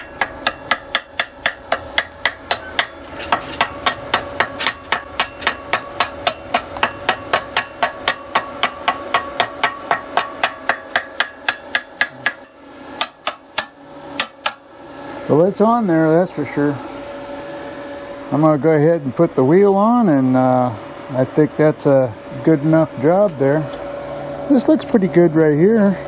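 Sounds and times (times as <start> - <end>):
hammer striking metal: 0.0 - 14.6.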